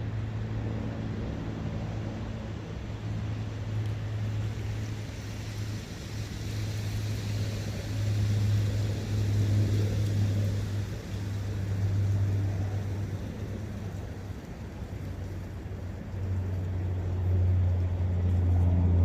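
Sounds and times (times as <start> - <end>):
low engine drone: 0.0 - 19.0.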